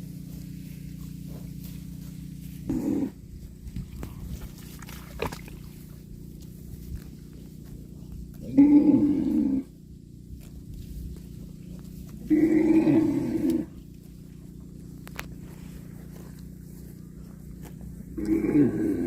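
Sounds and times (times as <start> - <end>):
cow mooing: 8.4 - 9.8, 12.2 - 13.9, 18.2 - 19.0.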